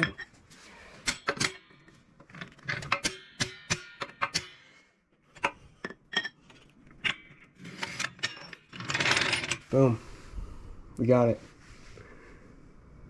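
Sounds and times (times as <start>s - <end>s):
metal tools clicking and clanking: 0.0s - 9.7s.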